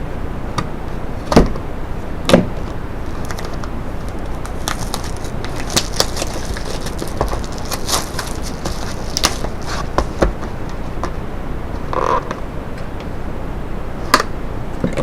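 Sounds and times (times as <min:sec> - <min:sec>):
wrapping crinkling and clicking: 0:02.6 - 0:11.2.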